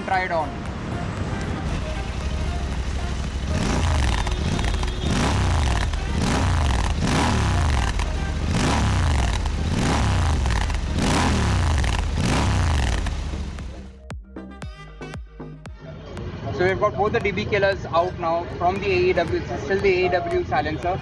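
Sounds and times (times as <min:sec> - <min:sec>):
motorcycle engine revving: 0:01.6 - 0:13.9.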